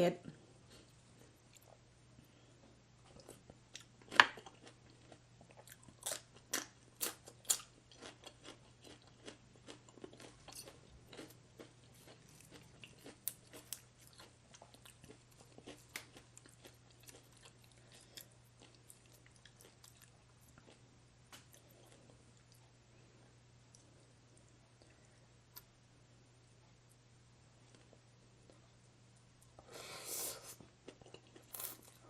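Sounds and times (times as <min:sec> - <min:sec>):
chewing crisp food: 0:00.7 - 0:01.8, 0:03.0 - 0:22.8, 0:30.5 - 0:32.0.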